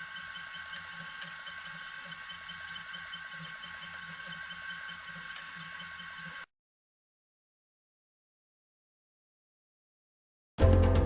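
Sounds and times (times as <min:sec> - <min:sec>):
machine hum: 0:00.0 - 0:06.5
stepper motors whining: 0:00.0 - 0:06.5.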